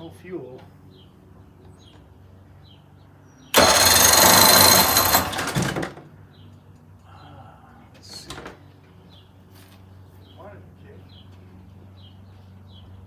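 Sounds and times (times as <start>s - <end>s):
outboard motor cranking: 3.6s - 6.1s.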